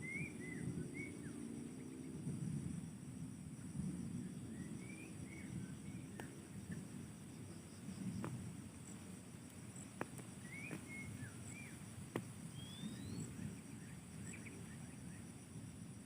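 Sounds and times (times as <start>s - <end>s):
high-pitched insect drone: 4.3s - 16.0s
bird chirps and whistles: 12.6s - 13.3s.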